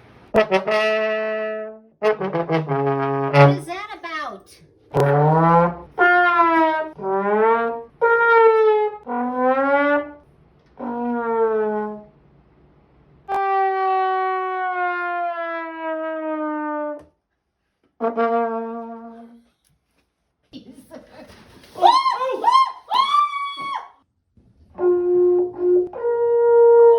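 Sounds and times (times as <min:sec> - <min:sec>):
comic trombone notes: 0:00.3 - 0:04.2, 0:04.8 - 0:10.2, 0:10.8 - 0:12.1, 0:13.3 - 0:17.0, 0:18.0 - 0:19.4, 0:24.8 - 0:26.9.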